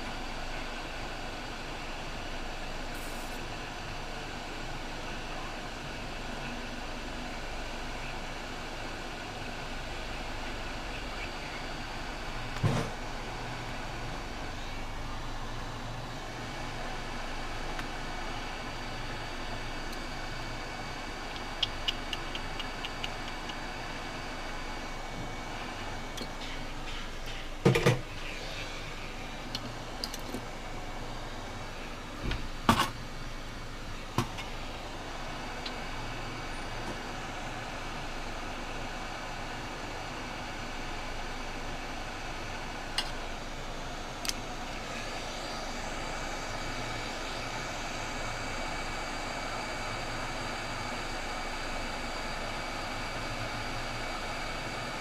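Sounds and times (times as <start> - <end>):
sharp taps and clicks: 21.3 - 23.6.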